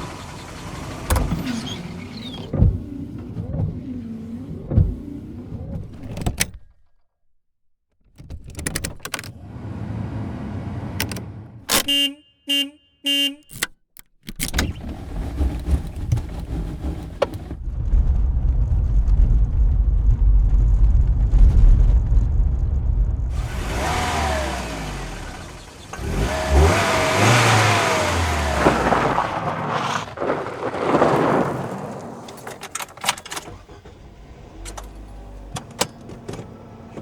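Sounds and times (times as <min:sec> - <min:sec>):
deep rumble of car riding: 0:00.0 - 0:06.1, 0:09.3 - 0:11.7, 0:14.7 - 0:37.0
short tones: 0:11.7 - 0:13.8
car engine running: 0:14.7 - 0:32.6.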